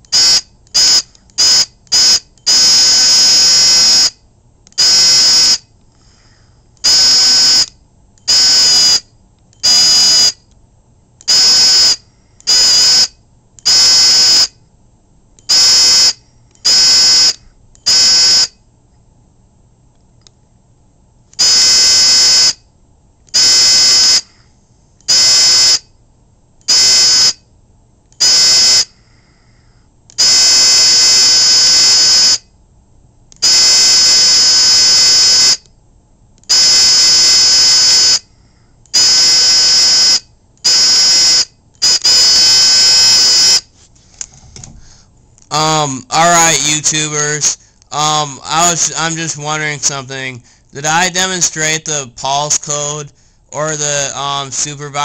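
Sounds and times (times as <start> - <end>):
electric buzzer buzzing: 0.1 - 4.2, 4.8 - 5.7, 6.8 - 10.4, 11.2 - 14.6, 15.5 - 18.6, 21.3 - 22.7, 23.3 - 24.4, 25.1 - 25.9, 26.6 - 27.5, 28.2 - 29.0, 30.2 - 32.5, 33.4 - 35.7, 36.4 - 38.3, 38.9 - 43.7.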